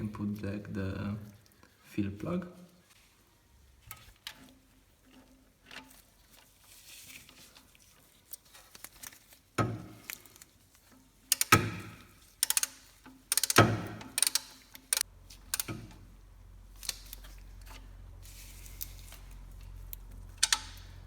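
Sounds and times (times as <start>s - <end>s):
sharp ratchet clicks: 11.3s - 15.8s.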